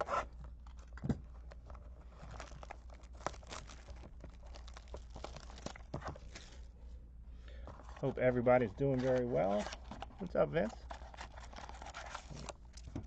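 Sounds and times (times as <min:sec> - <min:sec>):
plastic wrapping crinkling and tearing: 0:00.0 - 0:06.7, 0:08.9 - 0:13.0.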